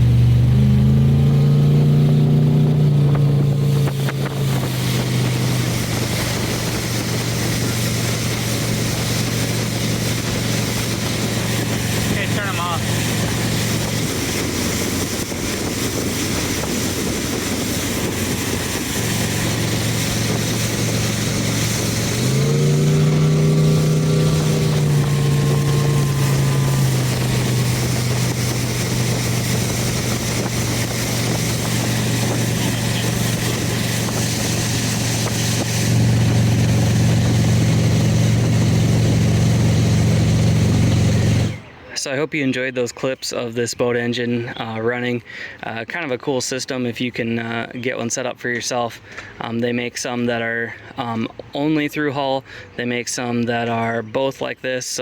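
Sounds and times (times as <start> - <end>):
boat engine running and revving: 0.0 - 41.8.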